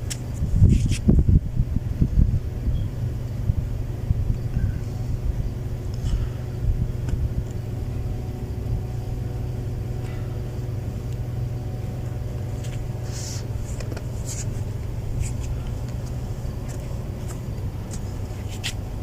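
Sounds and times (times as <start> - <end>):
faint hum: 0.0 - 19.0
motor rumble: 0.0 - 19.0
short hissing sounds: 13.0 - 15.6.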